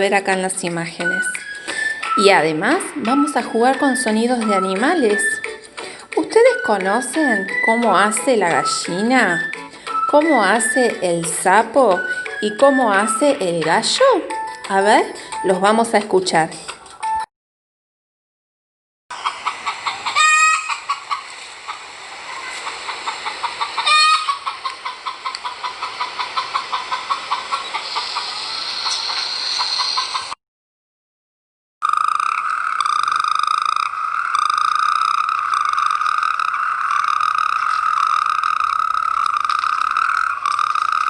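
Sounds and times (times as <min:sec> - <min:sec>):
hens clucking: 0:19.1 - 0:30.4
toads trilling: 0:19.2 - 0:30.3, 0:31.8 - 0:41.0
rooster crowing: 0:19.8 - 0:21.0, 0:23.7 - 0:24.5.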